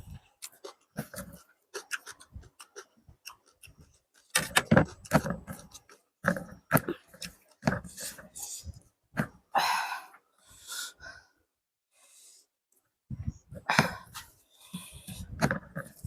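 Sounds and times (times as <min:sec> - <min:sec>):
chewing and lip-smacking: 0:00.1 - 0:08.2.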